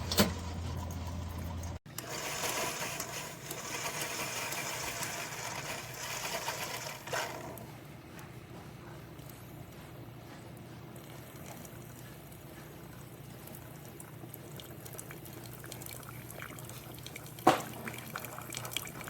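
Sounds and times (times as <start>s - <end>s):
coffee maker pump hissing: 1.9s - 7.7s, 14.7s - 19.0s.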